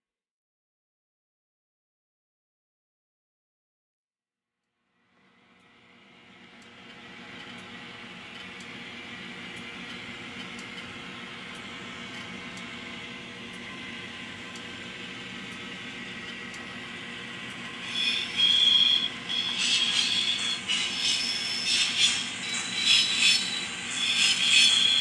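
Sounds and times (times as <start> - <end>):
high-pitched squeal: 17.8 - 25.0.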